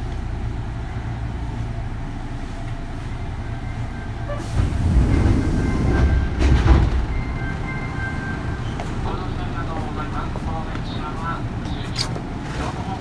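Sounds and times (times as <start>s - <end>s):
train wheels rumbling on rail: 0.0s - 13.0s
train clattering: 3.8s - 13.0s.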